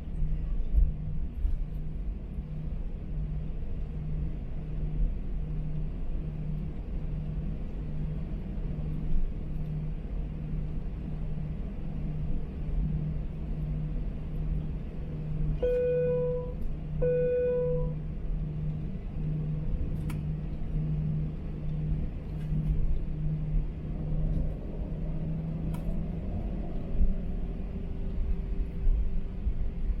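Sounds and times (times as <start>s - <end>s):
airplane cabin engine rumble: 0.0s - 30.0s
pulsing low hum: 0.0s - 30.0s
electronic chime tones: 15.6s - 17.9s.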